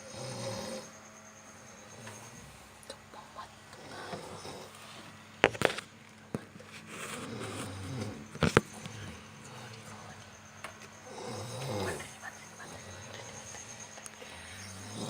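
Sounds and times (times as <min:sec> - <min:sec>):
person snoring: 0:00.0 - 0:00.9, 0:11.0 - 0:12.1, 0:14.2 - 0:15.0.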